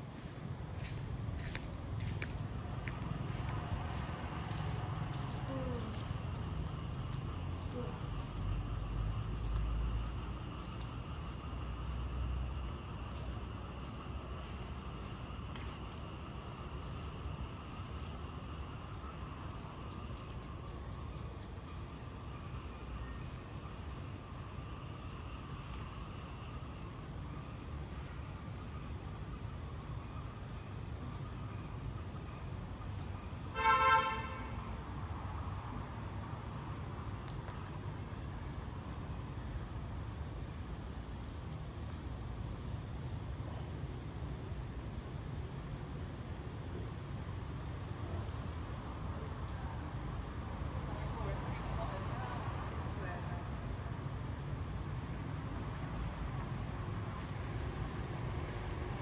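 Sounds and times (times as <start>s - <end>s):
distant traffic rumble: 0.0s - 20.7s, 40.3s - 59.0s
crickets chirring: 0.0s - 59.0s
vehicle horn toot: 33.6s - 34.6s.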